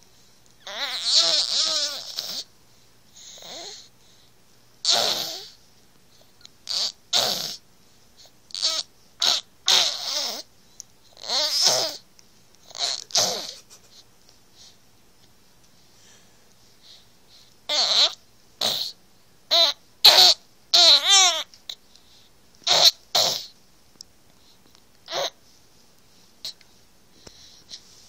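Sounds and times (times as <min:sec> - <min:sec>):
baby babbling: 0:00.6 - 0:02.5, 0:08.6 - 0:10.4, 0:11.2 - 0:12.0, 0:12.7 - 0:13.6, 0:17.7 - 0:21.5, 0:25.1 - 0:25.4.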